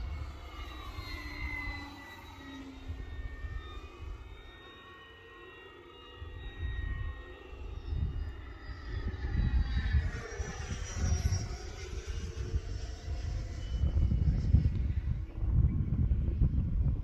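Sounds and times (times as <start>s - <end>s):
model airplane whine flying by: 0.0s - 17.0s
wind buffeting microphone: 6.4s - 17.0s.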